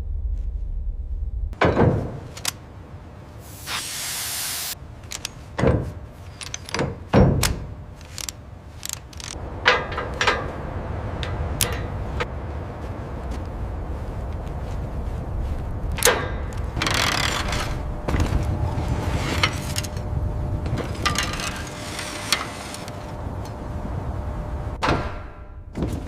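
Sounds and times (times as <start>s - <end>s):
low rumble: 0.0s - 1.6s, 9.1s - 26.0s
heavy mechanical clanks and thuds: 0.0s - 2.6s, 5.0s - 12.5s, 14.9s - 24.0s, 24.7s - 26.0s
burst of hissing: 3.4s - 4.8s
small metallic clicks: 5.0s - 5.5s, 6.2s - 10.5s.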